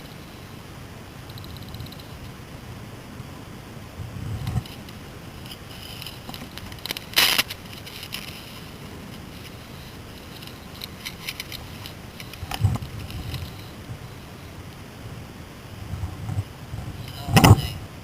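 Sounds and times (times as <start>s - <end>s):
rustling through brush: 4.3s - 14.5s.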